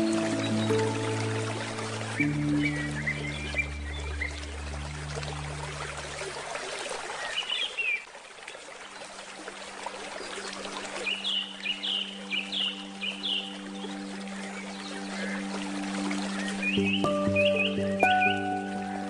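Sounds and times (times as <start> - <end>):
low sustained musical tones: 0.0 - 7.0, 9.0 - 19.0
river water flowing: 0.0 - 19.0
bird chirping: 16.3 - 19.0.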